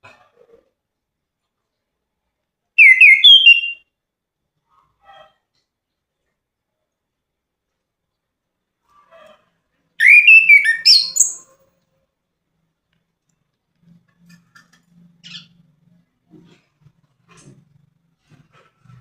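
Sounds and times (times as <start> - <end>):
thrush singing whistled notes: 2.8 - 3.8, 10.0 - 11.4.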